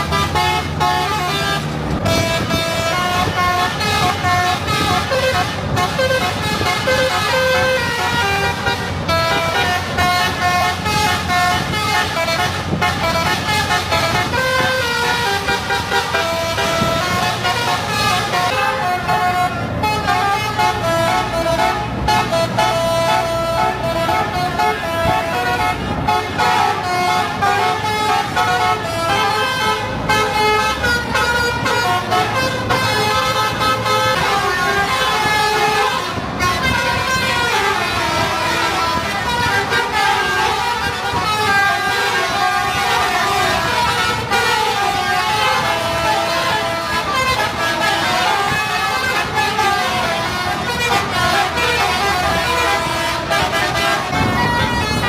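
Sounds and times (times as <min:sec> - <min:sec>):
musical air horn tune: 0:00.0 - 0:55.0.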